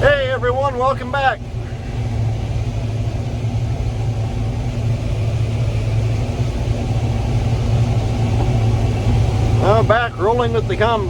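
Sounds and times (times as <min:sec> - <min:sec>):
combine harvester drone: 0:00.0 - 0:11.0.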